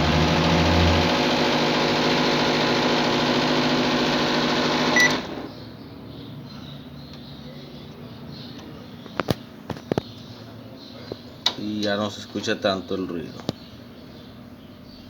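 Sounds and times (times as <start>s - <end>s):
microwave oven humming: 0.0s - 5.6s
microwave beep: 4.2s - 5.5s
faint background noise: 5.6s - 15.0s.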